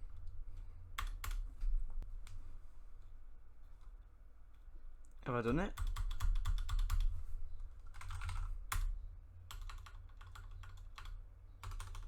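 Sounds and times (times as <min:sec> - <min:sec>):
mechanical keyboard keys clicking: 0:05.4 - 0:07.1, 0:09.5 - 0:12.0.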